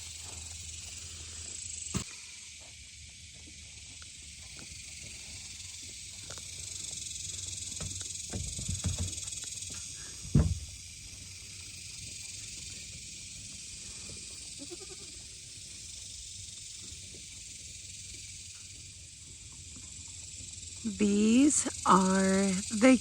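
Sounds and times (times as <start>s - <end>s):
insects droning: 0.0s - 23.0s
thump: 10.2s - 10.7s.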